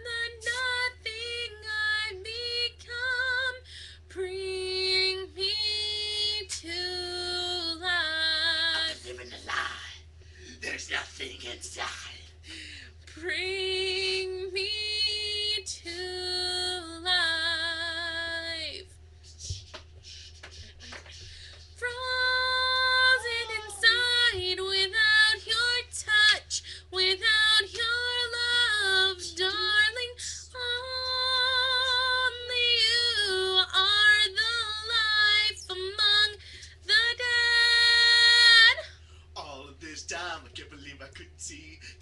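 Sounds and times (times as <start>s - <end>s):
faint low hum: 0.0s - 42.0s
girl singing unaccompanied: 21.8s - 38.8s.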